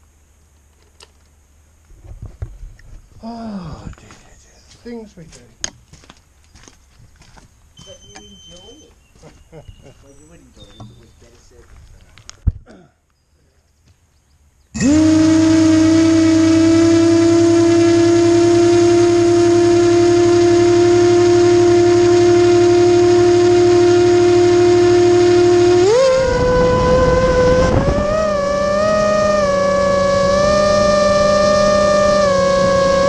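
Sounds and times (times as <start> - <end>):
quadcopter motors humming: 14.8 - 33.0.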